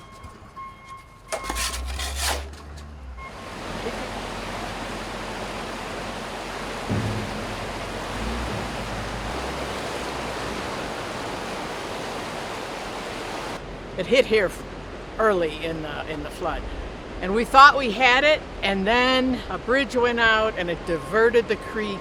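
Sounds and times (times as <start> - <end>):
floodwater rushing: 1.4 - 22.0
knocks: 6.8 - 9.3
low thump: 6.8 - 9.4.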